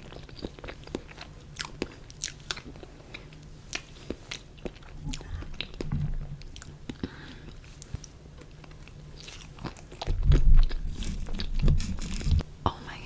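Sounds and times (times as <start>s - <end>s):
biting and chewing: 0.0s - 12.4s
deep low thumps: 5.0s - 6.6s, 10.0s - 12.4s.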